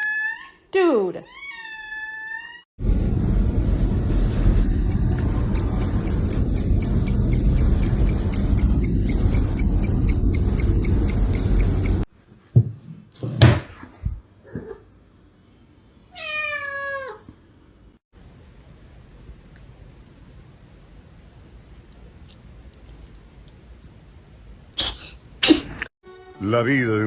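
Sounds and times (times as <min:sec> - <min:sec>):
cat meowing: 0:00.0 - 0:00.6, 0:01.2 - 0:02.6, 0:16.2 - 0:17.2
fast regular ticking: 0:04.8 - 0:12.1.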